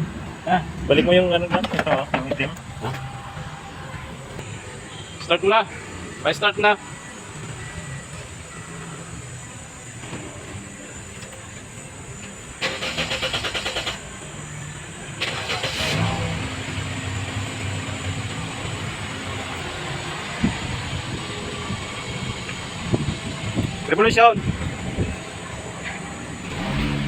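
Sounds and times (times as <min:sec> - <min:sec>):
car engine idling: 0:00.9 - 0:27.0
car starter cranking: 0:10.2 - 0:14.5, 0:15.1 - 0:27.0.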